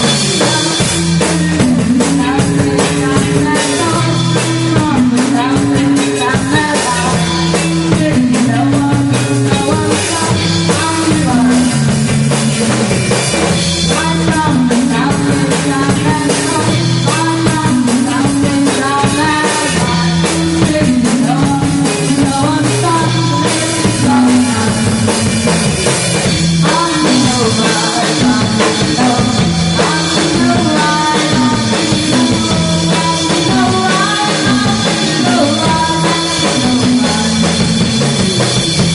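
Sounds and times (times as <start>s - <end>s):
rock band playing live: 0.0s - 38.9s.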